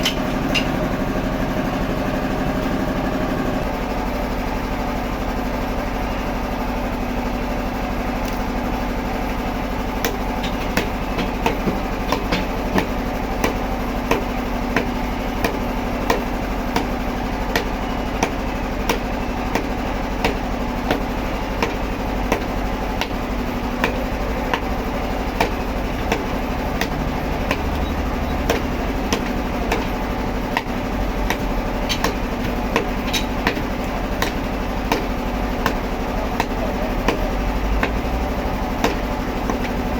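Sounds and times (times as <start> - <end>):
machinery running: 0.0 - 39.9
sharp knocks: 10.0 - 23.2, 25.4 - 35.8, 36.4 - 38.0, 38.8 - 39.8.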